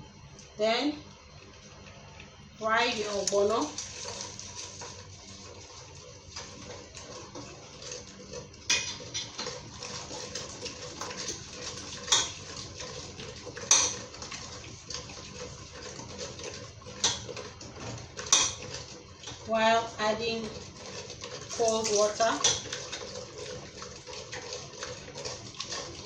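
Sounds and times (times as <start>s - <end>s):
metal spoon scraping pot: 20.2s - 26.0s.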